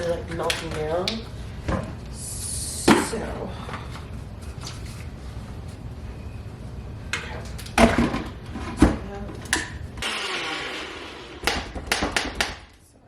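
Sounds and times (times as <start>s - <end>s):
blender running: 10.0s - 11.7s.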